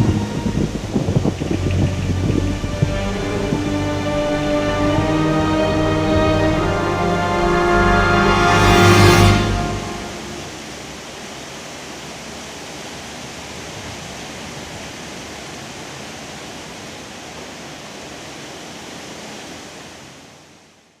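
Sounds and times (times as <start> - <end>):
steady rushing noise: 0.0 - 14.3.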